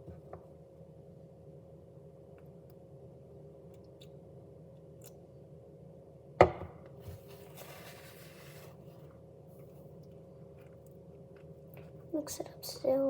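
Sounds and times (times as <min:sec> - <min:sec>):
rustling scrape: 0:07.1 - 0:09.0.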